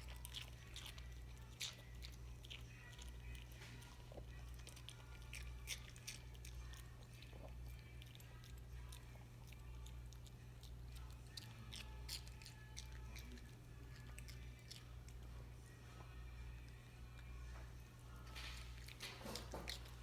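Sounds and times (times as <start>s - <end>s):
dog chewing watermelon: 0.0s - 16.3s, 18.2s - 20.0s
steady low hum: 0.0s - 20.0s.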